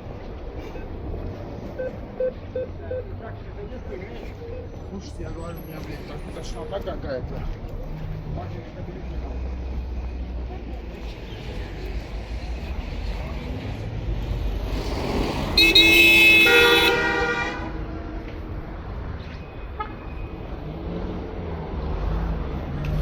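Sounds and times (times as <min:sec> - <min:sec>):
street noise: 0:00.0 - 0:23.0
vehicle horn honk: 0:15.6 - 0:17.8.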